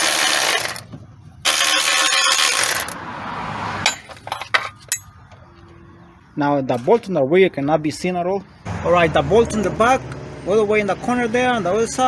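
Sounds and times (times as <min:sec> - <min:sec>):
power ratchet spinning: 0:00.0 - 0:03.0
socket and bolts clinking: 0:03.9 - 0:05.1.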